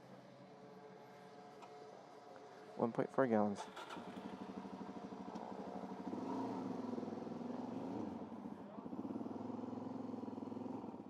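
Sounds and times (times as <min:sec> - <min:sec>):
motorcycle engine idling: 0:00.0 - 0:11.0.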